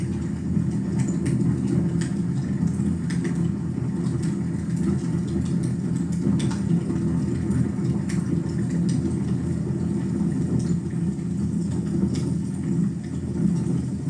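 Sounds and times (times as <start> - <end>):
low rumble of fire flames: 0.0 - 14.0.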